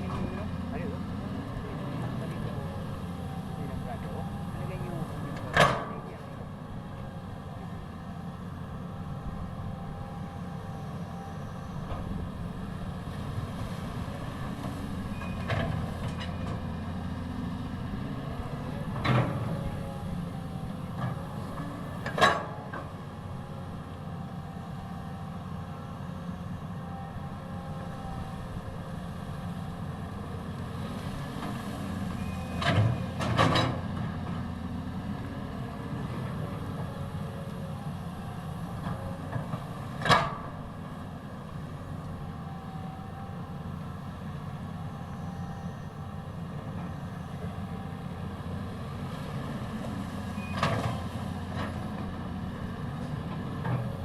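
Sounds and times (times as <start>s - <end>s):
excavator diesel engine running: 0.0s - 54.0s
faint wavering whine: 6.6s - 14.0s, 40.7s - 48.4s.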